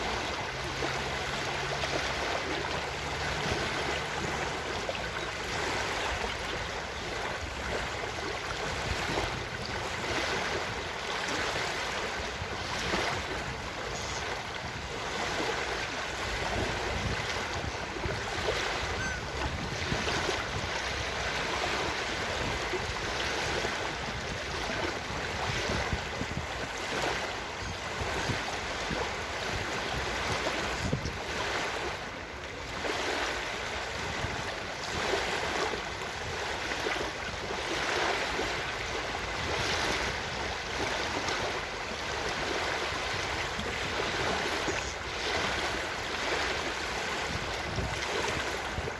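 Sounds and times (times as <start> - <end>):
ocean surf washing onto beach: 0.0 - 48.9.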